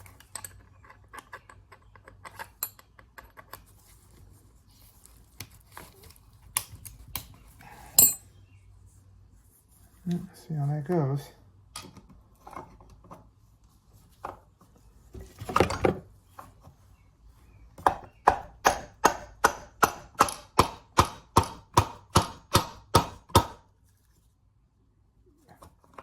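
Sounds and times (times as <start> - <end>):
piston being tapped with sharp knocks: 17.8 - 23.7.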